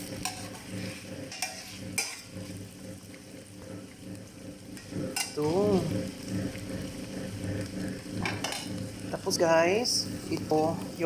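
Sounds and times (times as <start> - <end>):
utensil scraping the pan: 0.0 - 2.7
food sizzling in a frying pan: 0.0 - 11.0
steady low hum: 0.0 - 11.0.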